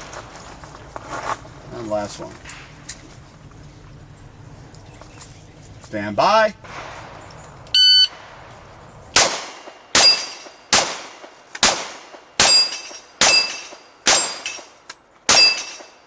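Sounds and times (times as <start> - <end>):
pistol shots: 9.1 - 14.7, 15.3 - 16.0
steel plate ringing: 12.4 - 14.7.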